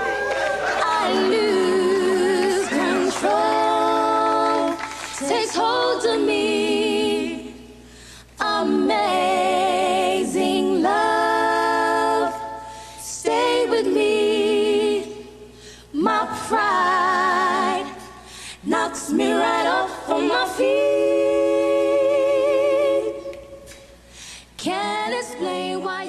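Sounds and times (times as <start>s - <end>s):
women singing in close harmony: 0.6s - 23.9s, 24.6s - 26.0s.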